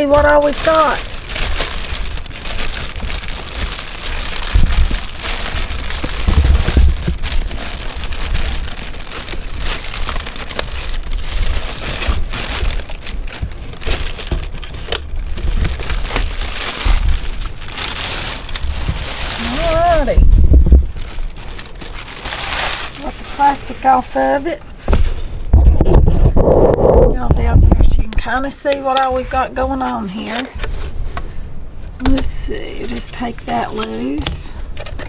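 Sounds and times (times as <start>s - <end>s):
dull handling thumps: 0.0s - 23.0s, 24.6s - 28.4s
plastic wrapping crinkling: 0.0s - 27.1s, 28.1s - 35.0s.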